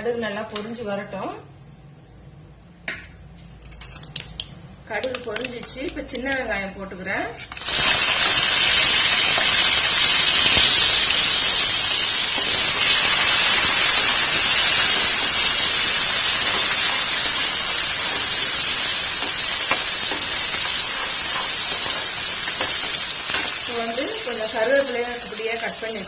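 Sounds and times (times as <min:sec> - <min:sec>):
onions sizzling in hot oil: 0:07.5 - 0:26.0.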